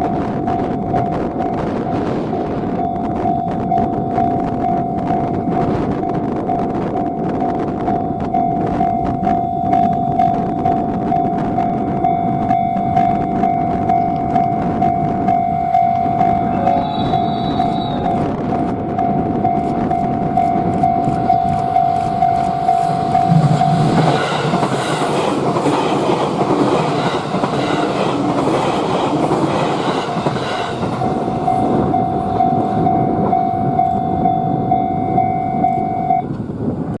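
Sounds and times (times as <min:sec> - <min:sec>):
level crossing alarm ringing: 0:00.0 - 0:25.8, 0:29.6 - 0:36.4
train wheels clattering over rail joints: 0:19.6 - 0:33.4.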